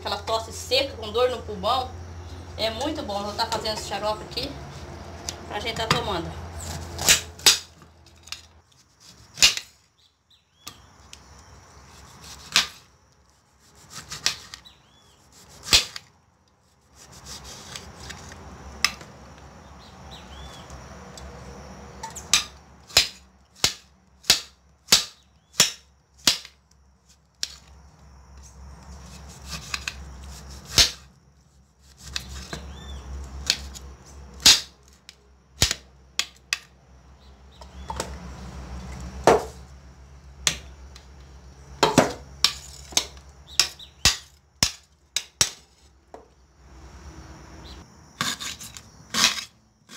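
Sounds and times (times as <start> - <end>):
low background hum: 0.0 - 9.3.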